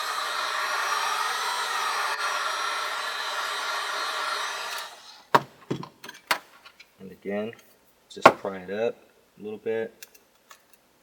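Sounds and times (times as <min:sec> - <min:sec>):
hot-air blower hissing: 0:00.0 - 0:05.3.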